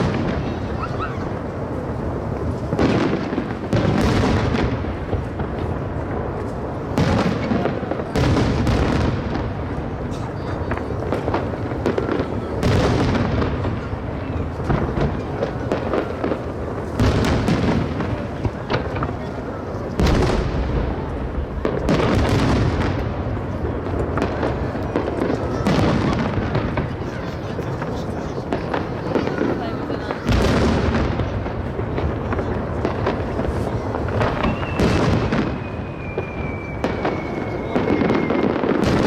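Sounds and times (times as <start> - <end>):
aerial fireworks bursting: 0.0 - 39.0.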